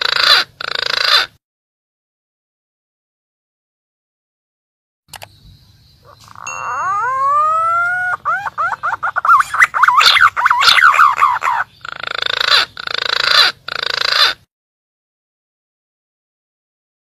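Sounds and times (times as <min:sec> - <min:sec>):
pigeon whistled calls: 0:06.0 - 0:11.7.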